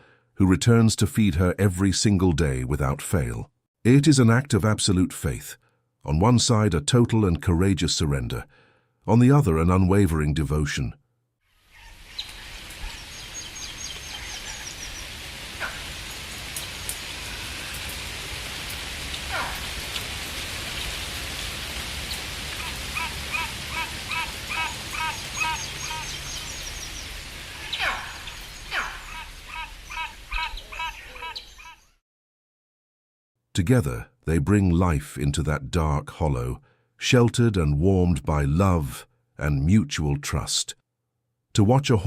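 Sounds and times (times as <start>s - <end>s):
rapid repeated bird chirps: 11.6s - 16.9s, 22.0s - 32.0s
small birds calling: 11.6s - 32.0s.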